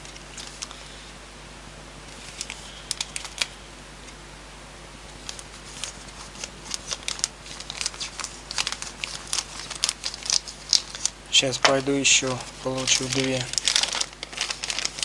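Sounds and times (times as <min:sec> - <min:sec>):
packaging rustling and clicking: 0:02.1 - 0:03.6, 0:05.2 - 0:15.0.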